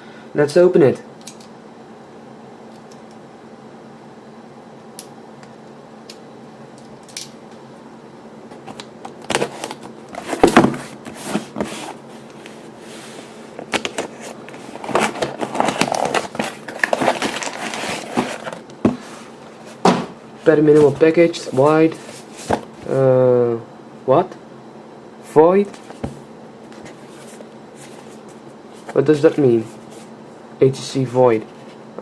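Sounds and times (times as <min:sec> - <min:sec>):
cardboard box scraping and rustling: 0:09.3 - 0:19.8.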